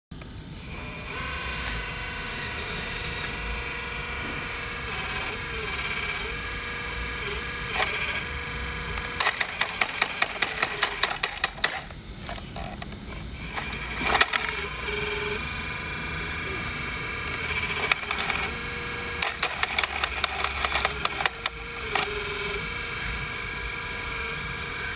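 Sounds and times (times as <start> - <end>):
hydraulic pump whining: 0.2 - 24.9
sharp clicks: 7.7 - 15.5, 16.4 - 22.6.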